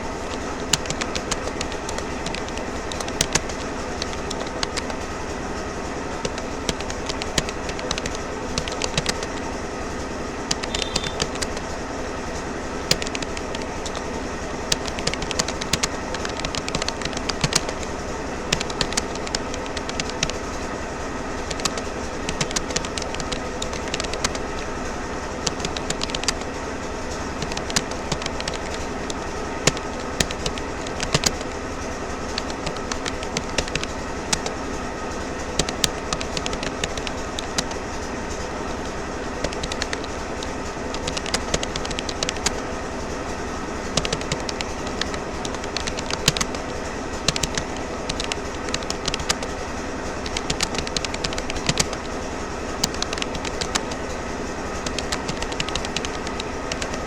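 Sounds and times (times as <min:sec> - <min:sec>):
computer keyboard typing: 0:00.0 - 0:09.7, 0:10.4 - 0:20.8, 0:21.4 - 0:42.7, 0:43.3 - 0:57.0
steady background hum: 0:00.0 - 0:57.0.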